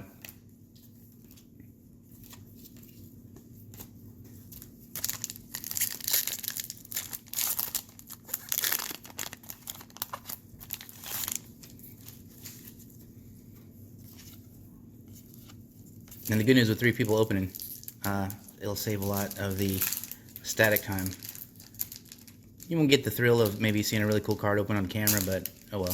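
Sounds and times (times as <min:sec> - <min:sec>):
card wrappers tearing and crinkling: 0:04.9 - 0:12.8, 0:16.1 - 0:25.9.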